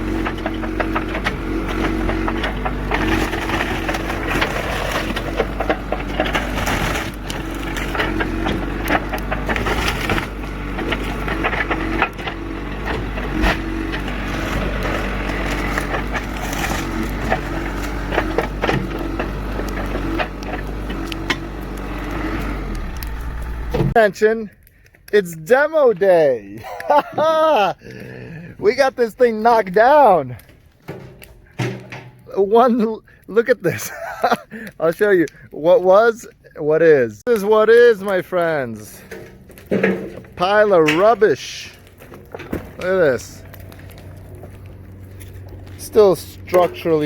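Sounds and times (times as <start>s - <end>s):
timber cracking and splintering: 0.0s - 26.0s, 37.3s - 47.0s
backhoe engine running: 0.0s - 47.0s.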